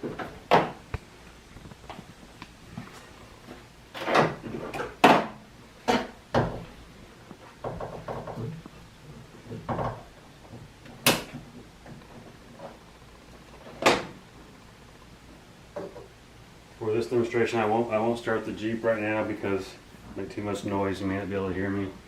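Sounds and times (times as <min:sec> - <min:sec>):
equipment clunking and clattering: 0:09.4 - 0:12.8.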